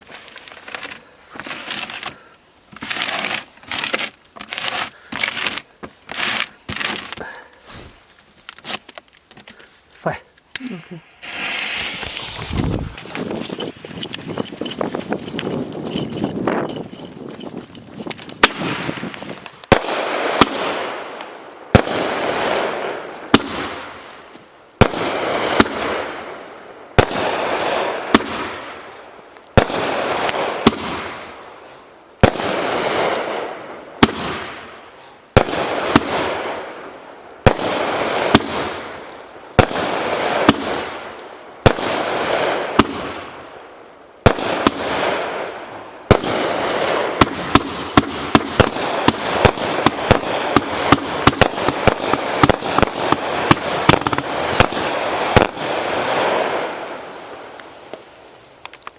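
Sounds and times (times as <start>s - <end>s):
firework bangs with hissing tails: 10.6s - 15.8s, 18.0s - 58.6s.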